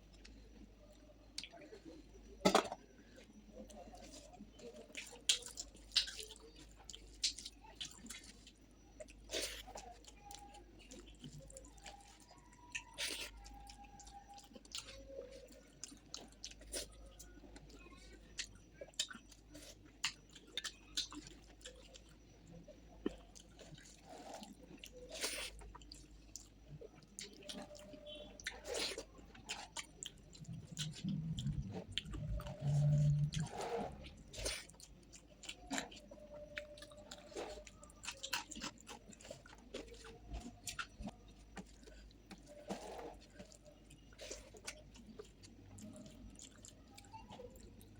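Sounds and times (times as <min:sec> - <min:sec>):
chewing and wet mouth sounds: 0:00.0 - 0:47.9
low-pitched hum: 0:30.3 - 0:34.9.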